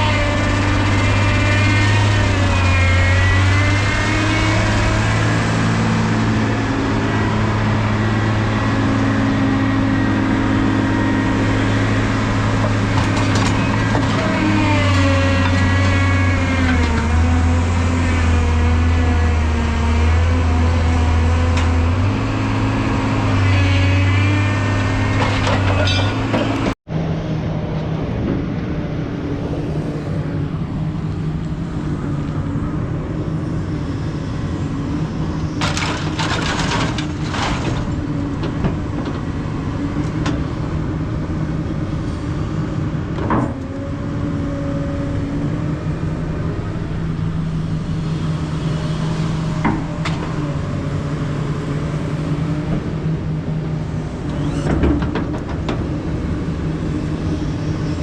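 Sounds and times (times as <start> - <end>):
heavy diesel machinery running: 0.0 - 58.0
whining rising and falling in pitch: 43.7 - 55.1.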